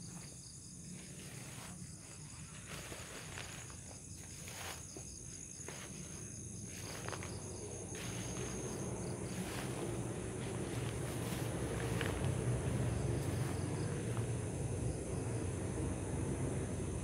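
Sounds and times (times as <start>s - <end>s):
insects trilling: 0.0s - 17.0s
low rumble: 6.7s - 17.0s.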